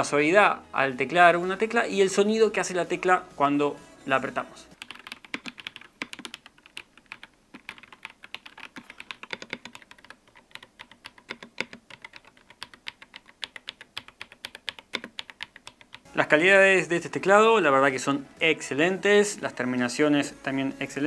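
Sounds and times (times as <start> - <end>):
mechanical keyboard typing: 4.8 - 16.1.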